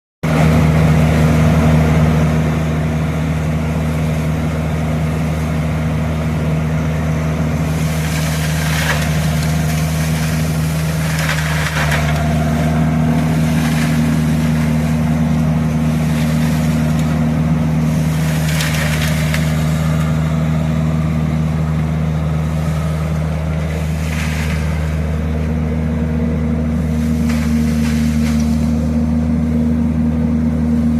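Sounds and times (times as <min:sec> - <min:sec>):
vacuum truck engine hum: 0:00.2 - 0:30.9
leaves sucked up rattling: 0:07.5 - 0:29.5.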